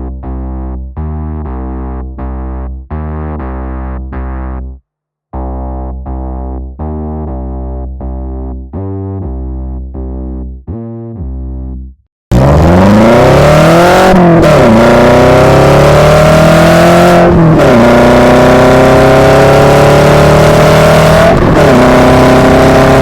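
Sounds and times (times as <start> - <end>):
car engine accelerating hard: 12.3 - 23.0.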